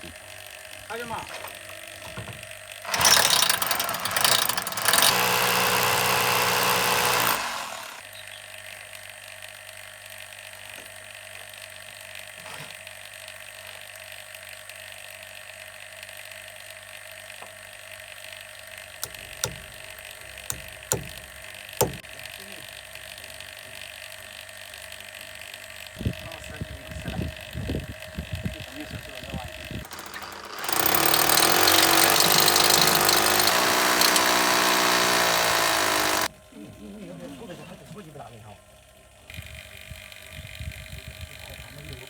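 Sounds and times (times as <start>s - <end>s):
vacuum pump humming: 2.3s - 8.0s, 18.8s - 22.4s, 26.0s - 36.3s
power drill drilling: 2.8s - 8.0s, 19.0s - 19.8s, 20.5s - 22.0s, 29.3s - 36.3s
sharp knocks: 19.0s - 19.8s, 20.4s - 22.1s.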